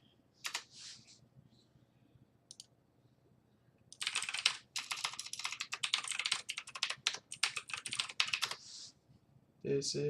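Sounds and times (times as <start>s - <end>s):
rapid typing on computer keyboard: 0.5s - 0.7s, 4.0s - 8.6s.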